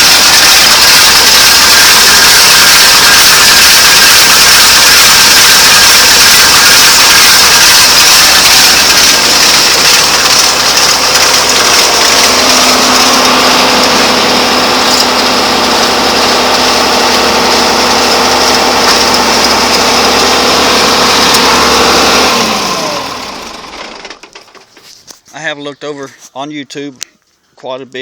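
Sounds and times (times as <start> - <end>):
baler machinery running: 0.0 - 24.8
tractor engine drone: 0.0 - 26.1.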